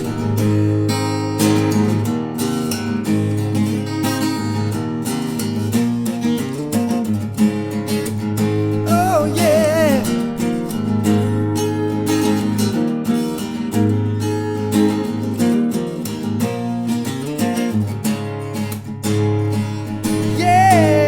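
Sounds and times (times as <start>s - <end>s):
acoustic guitar strumming: 0.0s - 21.0s
person singing: 8.8s - 11.5s, 20.0s - 21.0s.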